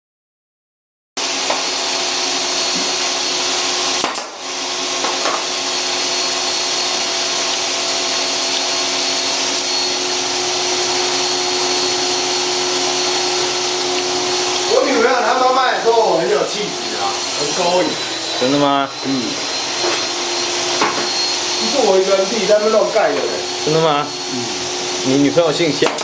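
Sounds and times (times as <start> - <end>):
thin high whine: 8.3 - 25.8.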